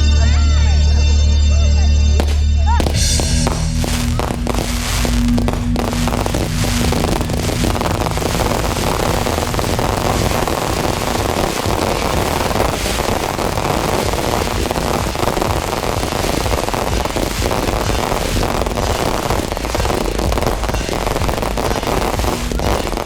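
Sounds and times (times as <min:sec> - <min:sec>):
fireworks bangs and crackling: 0:02.2 - 0:23.0.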